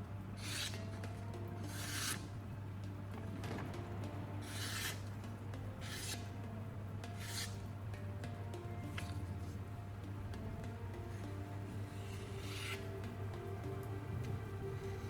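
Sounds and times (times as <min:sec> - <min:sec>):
low hum: 0:00.0 - 0:15.0
knife blade scraping: 0:00.4 - 0:02.3, 0:04.4 - 0:06.4, 0:07.0 - 0:07.8, 0:10.9 - 0:13.5.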